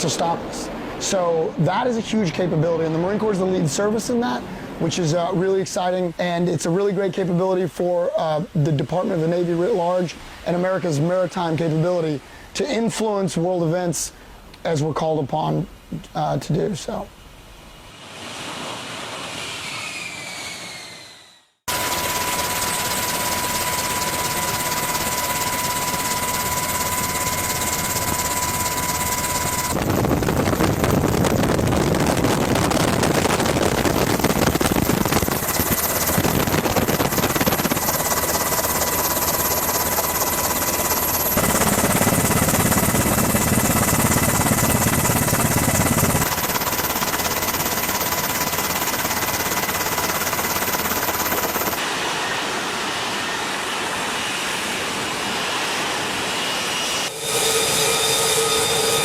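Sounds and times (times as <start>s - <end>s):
aircraft engines running: 19.0s - 59.0s.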